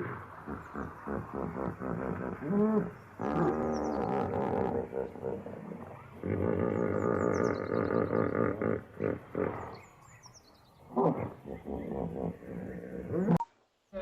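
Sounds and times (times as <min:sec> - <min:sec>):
hippopotamus grunts: 0:00.0 - 0:10.2
hippopotamus calling: 0:00.0 - 0:13.4
small birds chirping: 0:00.0 - 0:14.0.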